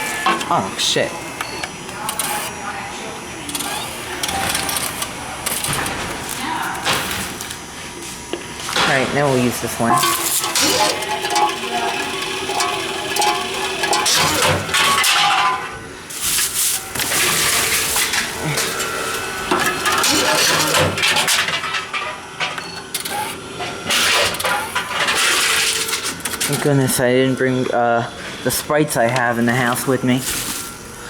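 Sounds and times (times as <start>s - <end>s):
machine hum: 0.0s - 31.0s
bottles and cans clattering: 9.8s - 15.8s, 19.5s - 22.6s.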